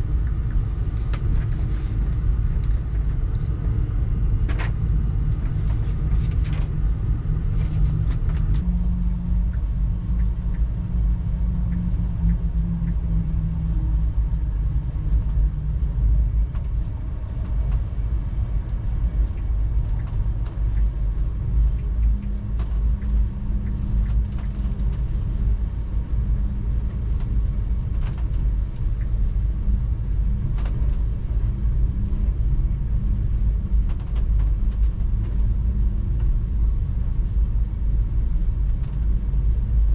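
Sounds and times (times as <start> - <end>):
low hum: 0.0 - 39.9
train rumbling on track: 0.0 - 39.9
light clicks and rattles: 15.0 - 25.8, 26.4 - 29.8, 30.4 - 31.4, 33.7 - 36.5, 38.6 - 39.2.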